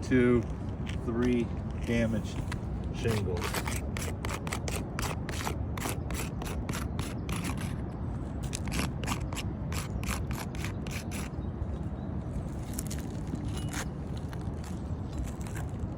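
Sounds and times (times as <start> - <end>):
steady low rumble: 0.0 - 15.9
gritty scrapes on roof shingles: 1.7 - 7.8, 8.5 - 11.3.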